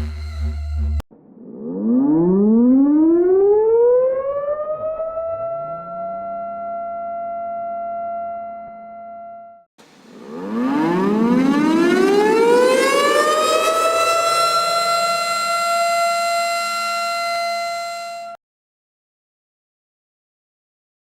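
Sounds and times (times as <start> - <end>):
tornado siren wailing: 1.5 - 9.4, 10.2 - 18.4.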